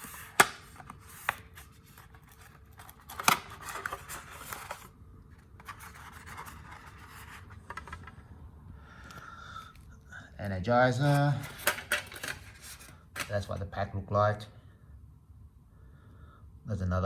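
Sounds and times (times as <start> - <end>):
scraping and rustling: 5.6 - 8.2.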